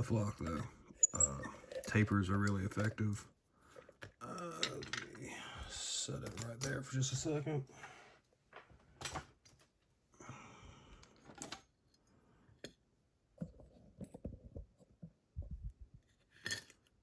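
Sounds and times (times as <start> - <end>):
metal tools clicking and tapping: 4.4 - 5.2, 6.2 - 6.8.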